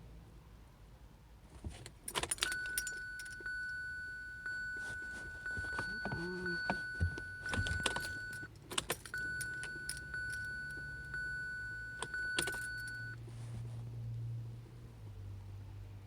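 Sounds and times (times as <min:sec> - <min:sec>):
car keys jangling: 0:01.7 - 0:13.2
steady high tone: 0:02.6 - 0:08.5.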